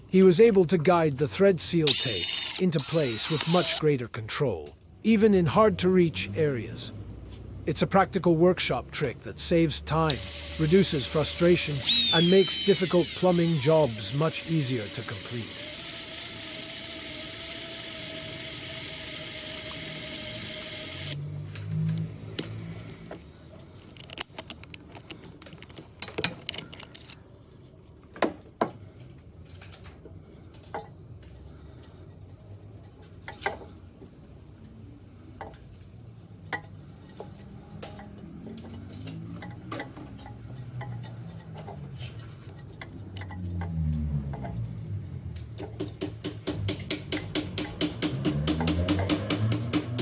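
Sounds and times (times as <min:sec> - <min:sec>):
cordless drill motor whirring: 0:01.9 - 0:03.8, 0:10.1 - 0:21.2.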